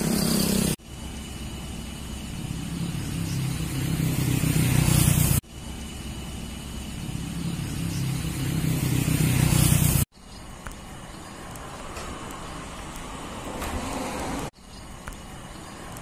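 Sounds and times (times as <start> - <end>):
vehicle engine running: 0.0 - 10.1.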